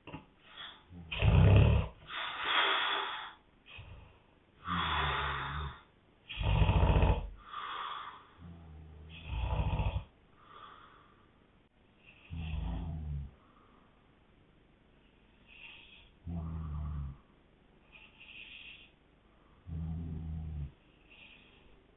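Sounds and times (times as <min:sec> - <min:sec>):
man snoring: 0:00.9 - 0:02.0, 0:04.6 - 0:07.8, 0:08.4 - 0:10.1, 0:12.2 - 0:13.4, 0:15.6 - 0:17.2, 0:19.7 - 0:20.8.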